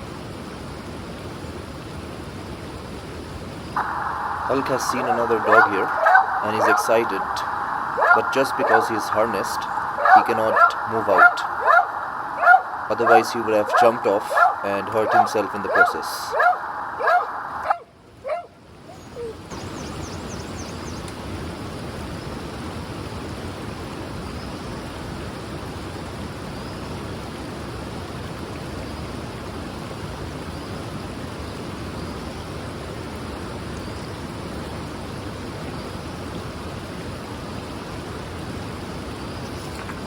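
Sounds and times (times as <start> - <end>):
wind rushing on microphone: 3.8 - 17.8.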